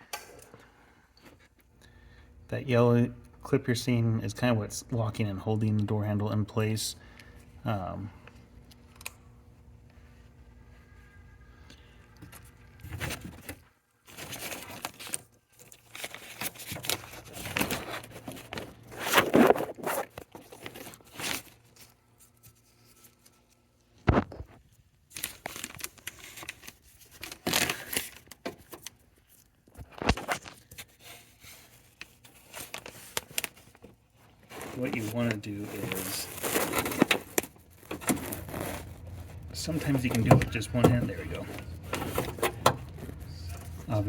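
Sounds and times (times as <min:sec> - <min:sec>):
plastic sheet crinkling: 0:14.0 - 0:23.4, 0:25.1 - 0:44.0.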